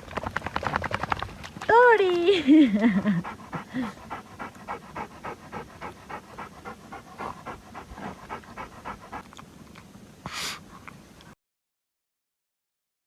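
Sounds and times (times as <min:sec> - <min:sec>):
pet panting rapidly: 0:02.9 - 0:09.4
short hiss: 0:10.2 - 0:10.6.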